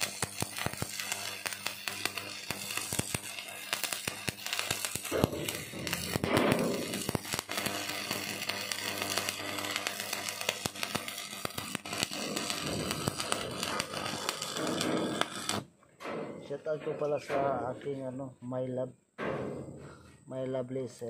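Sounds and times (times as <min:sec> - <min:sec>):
arc welding crackling: 0:00.0 - 0:15.7.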